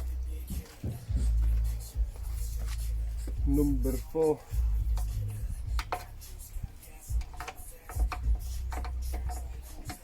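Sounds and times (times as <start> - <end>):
hand tool clicks and knocks: 4.8 - 6.2, 7.1 - 10.0.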